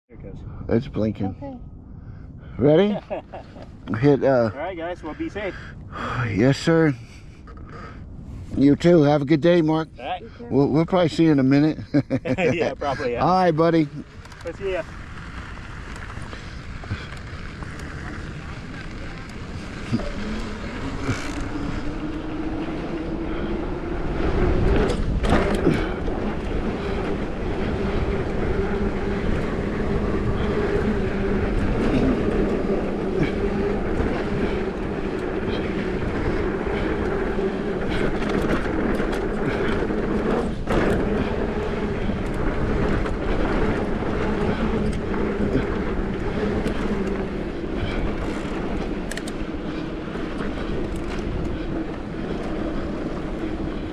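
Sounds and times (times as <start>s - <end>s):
bike rattling over bumps: 11.0s - 53.9s
bike tyres rolling on dirt: 12.9s - 53.9s.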